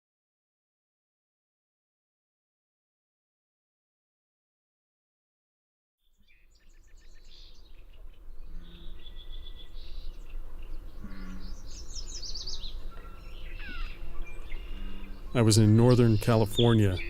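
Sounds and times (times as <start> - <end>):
bird singing: 6.0 - 17.0.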